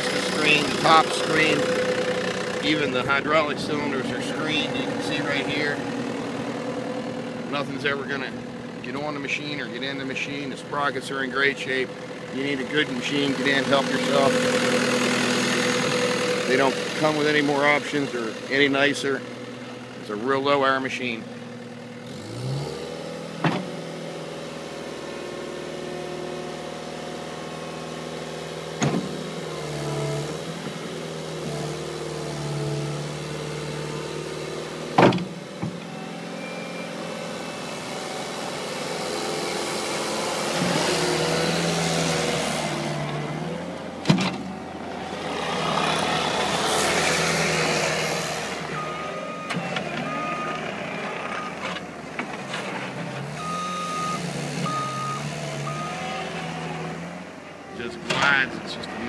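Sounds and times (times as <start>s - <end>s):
diesel engine under load: 0.0s - 59.0s
reversing alarm beeping: 35.9s - 37.9s, 48.8s - 50.6s, 53.4s - 56.1s.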